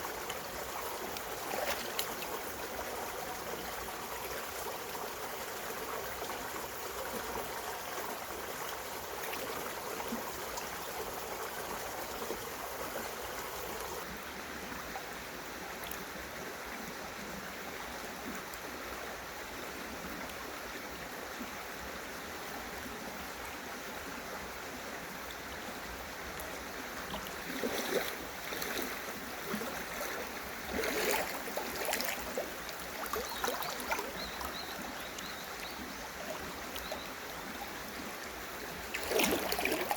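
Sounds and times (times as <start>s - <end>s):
water splashes: 0.0s - 4.1s, 26.3s - 39.9s
stream water running: 0.0s - 39.9s.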